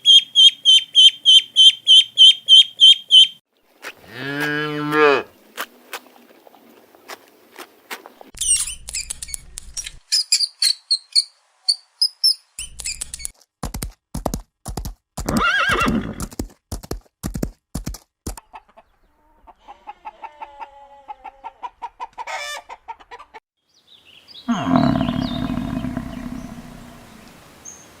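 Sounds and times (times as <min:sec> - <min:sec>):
high animal chirping: 0:00.0 - 0:03.4, 0:24.5 - 0:27.2
horse neighing: 0:15.3 - 0:16.2, 0:24.5 - 0:27.2
animal calls: 0:24.5 - 0:27.3.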